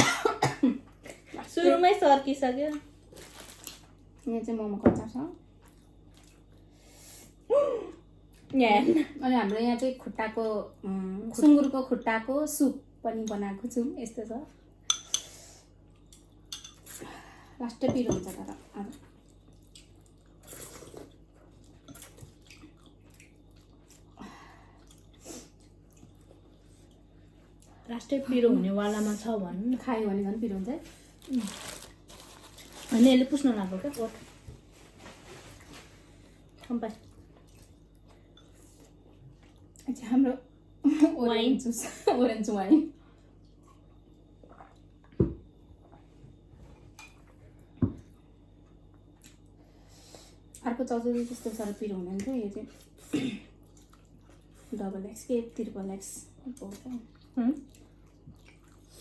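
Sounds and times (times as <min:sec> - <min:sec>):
person chewing food: 0:19.0 - 0:27.7, 0:53.6 - 0:54.6, 0:57.1 - 0:59.0.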